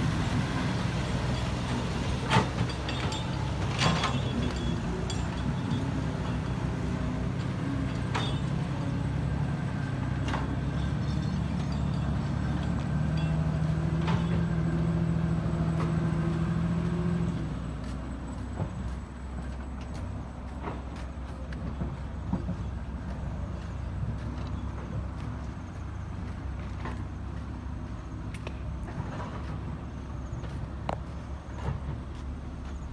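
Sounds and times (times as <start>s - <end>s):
diesel engine running: 0.0s - 32.9s
sharp metallic clanks: 1.2s - 6.7s, 10.2s - 14.6s.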